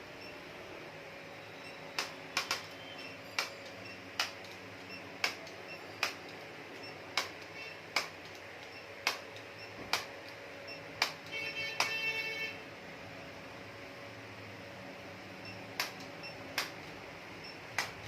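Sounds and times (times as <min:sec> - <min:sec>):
faint steady hum: 0:00.0 - 0:18.0
sharp clicks: 0:02.0 - 0:10.4, 0:11.0 - 0:12.0, 0:15.7 - 0:18.0.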